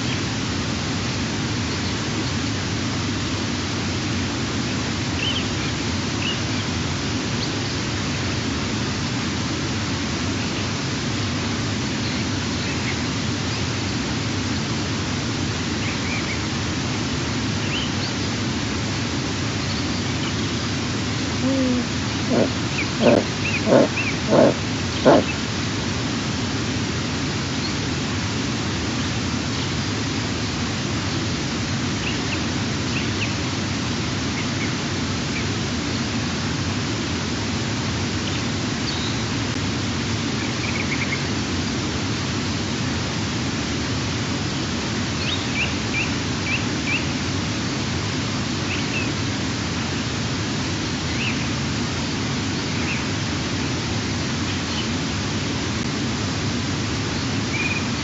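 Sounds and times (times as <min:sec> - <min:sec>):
steady hiss: 0:00.0 - 0:58.0
eagle calls: 0:21.4 - 0:25.4
faint small birds chirping: 0:21.4 - 0:25.4.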